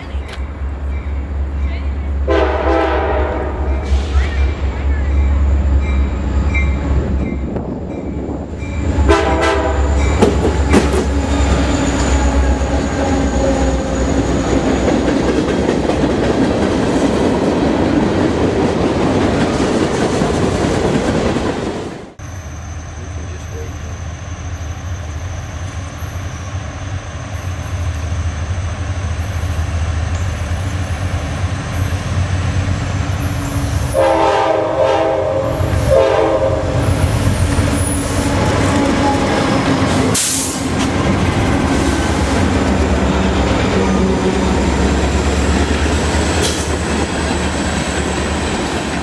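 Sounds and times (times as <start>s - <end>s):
train horn blasts: 2.2s - 6.2s, 9.0s - 10.4s, 33.7s - 37.1s.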